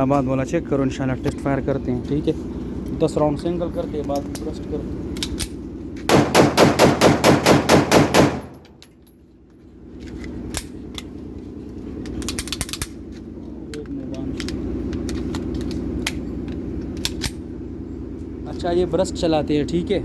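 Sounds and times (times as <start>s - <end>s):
steady low hum: 0.0s - 20.0s
pistol shots: 6.1s - 8.8s
metallic clicks and rattles: 12.0s - 13.0s.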